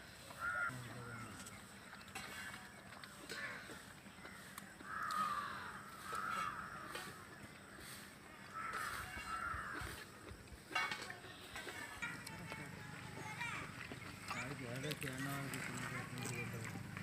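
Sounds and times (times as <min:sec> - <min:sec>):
crows cawing: 0:00.4 - 0:01.3, 0:03.3 - 0:03.7, 0:04.8 - 0:07.4, 0:08.5 - 0:10.1.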